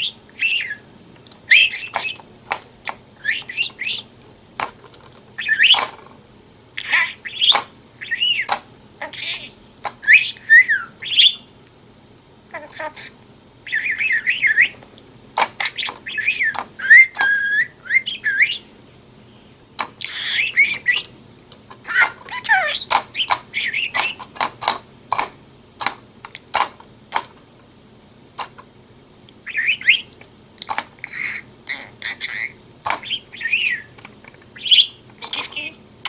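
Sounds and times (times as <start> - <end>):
budgerigar chattering and warbling: 1.5 - 2.2, 6.8 - 11.4, 20.0 - 21.0, 21.8 - 24.3, 31.0 - 35.7.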